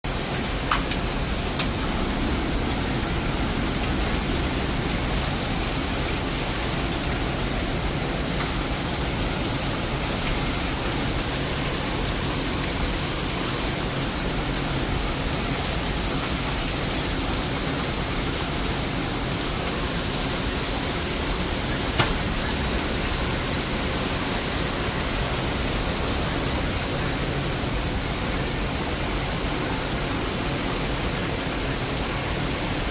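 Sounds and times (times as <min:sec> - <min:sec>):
heavy rain hissing: 0:00.1 - 0:32.9.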